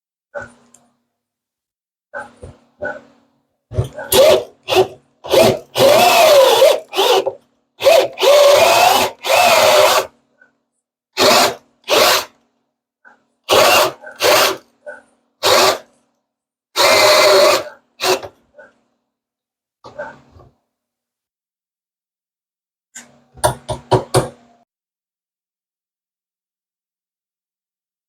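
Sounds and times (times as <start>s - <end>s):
drill with hole saw cutting wood: 4.0s - 10.1s, 11.2s - 12.4s, 13.5s - 14.7s, 15.4s - 15.9s, 16.8s - 18.4s.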